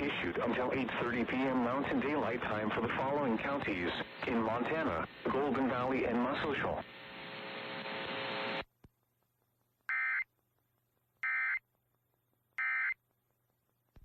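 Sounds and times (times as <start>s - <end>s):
static hiss: 0.0s - 8.7s.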